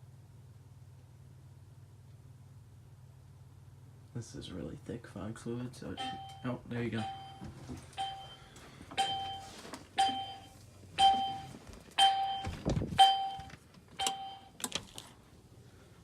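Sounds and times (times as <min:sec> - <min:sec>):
smoke detector beeping: 0:05.9 - 0:14.6.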